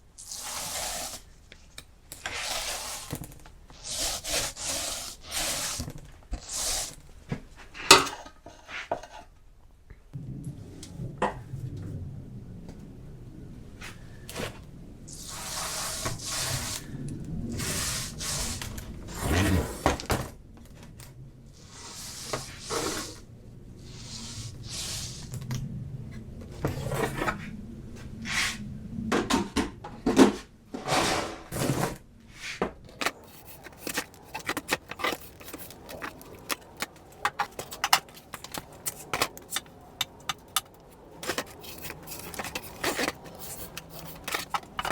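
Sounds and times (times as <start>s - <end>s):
roller hissing over wax: 0.2s - 1.3s, 2.3s - 7.0s, 15.1s - 20.0s, 21.6s - 25.5s, 32.4s - 44.9s
clicks and knocks of handling: 32.7s - 44.9s.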